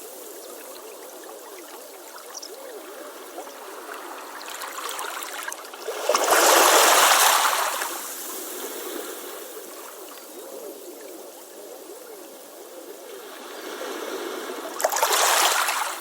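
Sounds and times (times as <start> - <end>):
water trickling over shore: 0.1 - 10.5.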